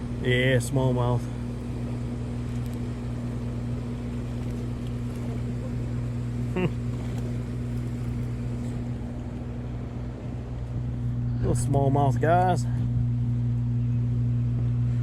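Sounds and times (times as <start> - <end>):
low mechanical hum: 0.0 - 15.0.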